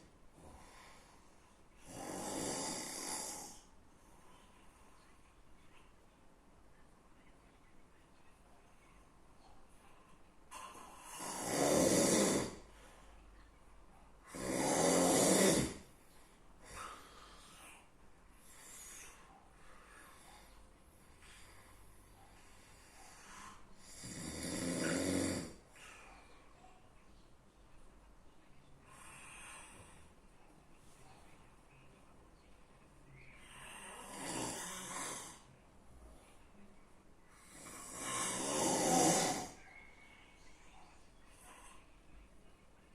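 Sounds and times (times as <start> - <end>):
person snoring: 1.8 - 3.6, 11.0 - 12.7, 14.3 - 15.9, 23.5 - 25.6, 33.6 - 35.4, 37.5 - 39.6
soft breath: 15.8 - 24.1.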